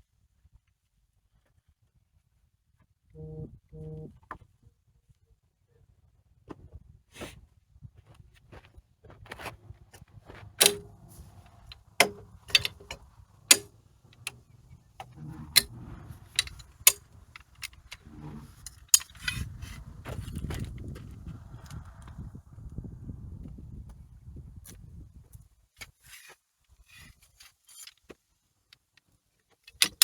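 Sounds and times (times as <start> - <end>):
metal tools clicking and knocking: 10.6 - 14.4, 15.0 - 19.5, 29.6 - 30.0
low rumble: 14.1 - 18.7.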